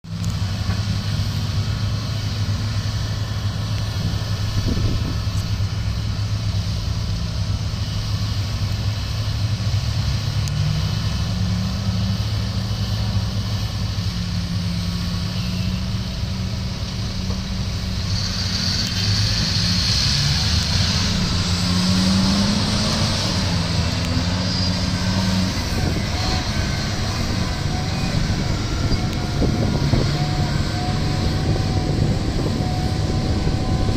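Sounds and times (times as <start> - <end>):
heavy diesel engines running: 0.0 - 33.9
hiss: 17.0 - 25.7.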